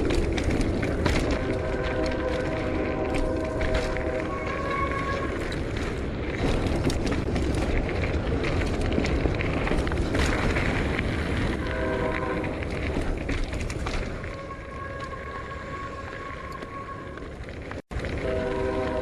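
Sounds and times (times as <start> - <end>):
bike tyres hammering over rocks: 0.0 - 14.6
bike frame and chain knocking: 0.0 - 15.1.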